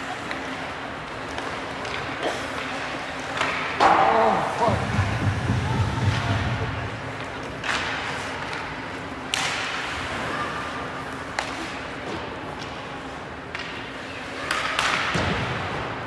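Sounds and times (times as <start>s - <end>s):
arena noise: 0.0s - 16.0s
puck and sticks hitting boards: 3.3s - 4.4s, 7.4s - 8.6s, 9.3s - 9.8s, 11.3s - 11.8s, 13.5s - 13.8s, 14.4s - 15.8s
low hum: 4.5s - 7.9s.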